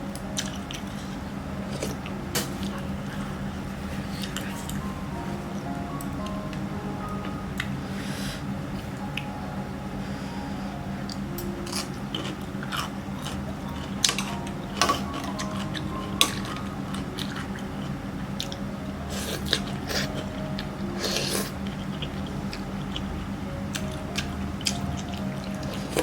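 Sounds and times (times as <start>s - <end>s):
faint low hum: 0.0s - 26.0s
crunchy chewing: 11.0s - 26.0s.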